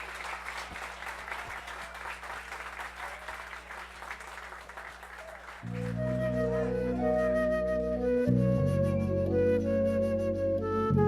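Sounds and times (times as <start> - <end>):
audience applauding: 0.0 - 7.1
music with long held notes: 5.7 - 11.0.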